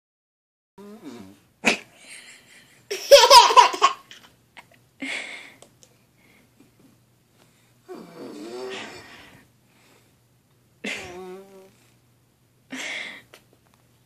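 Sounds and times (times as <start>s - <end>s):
little boy laughing: 2.1s - 4.2s.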